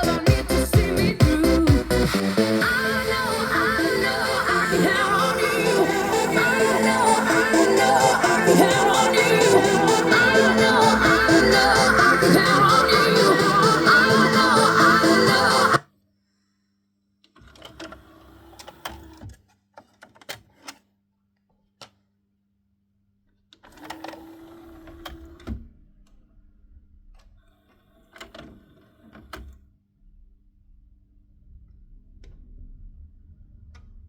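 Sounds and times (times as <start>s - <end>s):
music: 0.0s - 15.8s.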